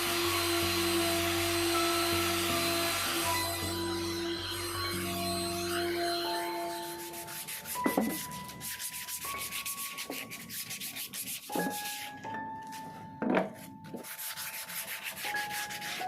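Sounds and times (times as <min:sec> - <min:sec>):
background music with held notes: 0:00.0 - 0:16.0
sandpaper rubbing: 0:06.6 - 0:12.2, 0:13.8 - 0:16.0.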